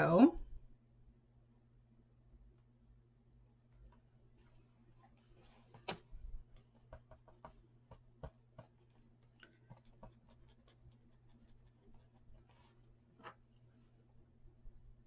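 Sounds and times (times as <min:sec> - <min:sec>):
paper rustling and tapping: 0:05.5 - 0:13.5.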